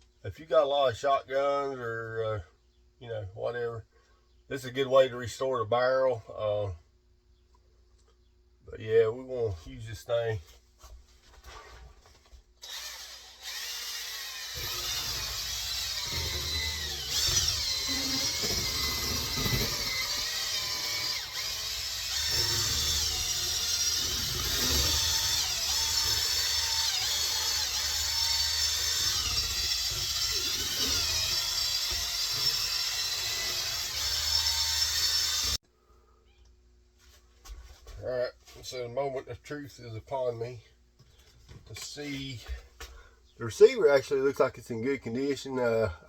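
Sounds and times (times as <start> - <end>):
electric drill motor whirring: 12.6 - 35.6.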